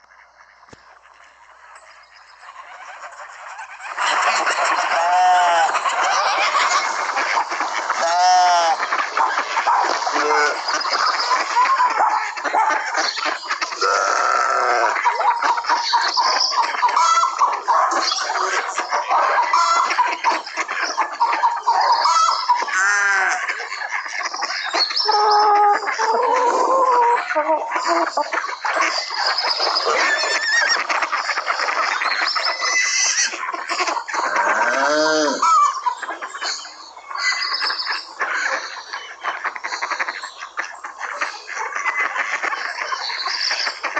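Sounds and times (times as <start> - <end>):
chickens clucking: 0.0 - 43.9
small birds chirping: 0.0 - 43.9
livestock calling: 1.1 - 36.3
long drawn-out animal call: 4.8 - 6.7, 7.8 - 9.0, 10.0 - 10.8, 13.6 - 15.5, 22.0 - 23.7, 32.6 - 35.9.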